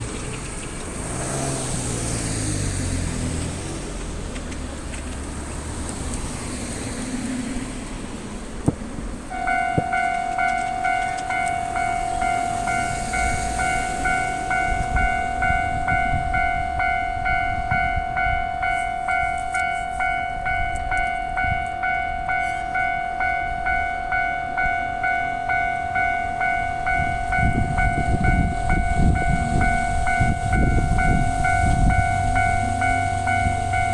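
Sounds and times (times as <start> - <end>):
vehicles passing on road: 0.0 - 33.9
level crossing alarm ringing: 9.3 - 33.9.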